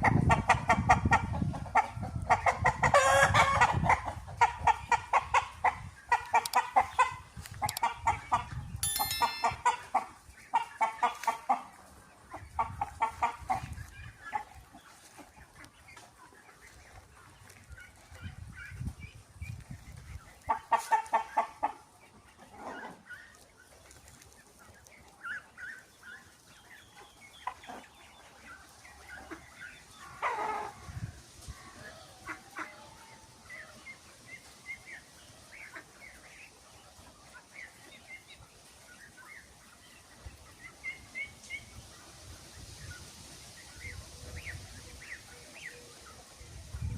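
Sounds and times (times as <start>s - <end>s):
chickens clucking: 0.0s - 46.9s.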